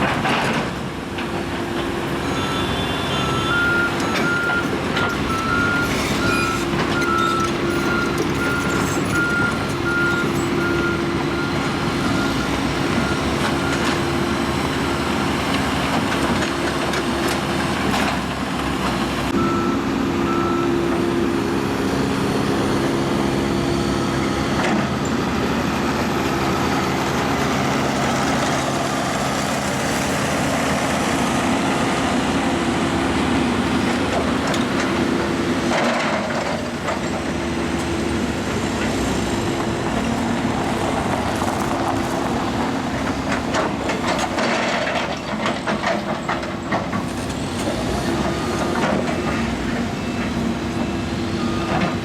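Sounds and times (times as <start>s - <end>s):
diesel engine running: 0.0s - 52.0s
reversing alarm beeps: 2.2s - 14.0s, 19.4s - 21.0s, 50.9s - 51.9s.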